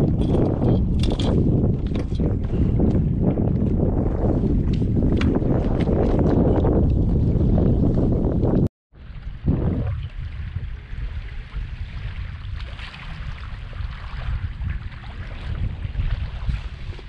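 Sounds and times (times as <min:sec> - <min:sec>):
wind rumbling on microphone: 0:00.0 - 0:17.0
water sloshing around boat: 0:09.0 - 0:17.0.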